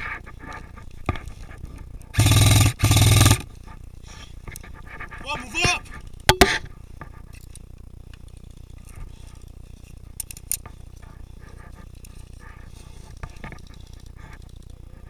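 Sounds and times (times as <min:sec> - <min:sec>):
airsoft guns firing: 0:02.2 - 0:03.4.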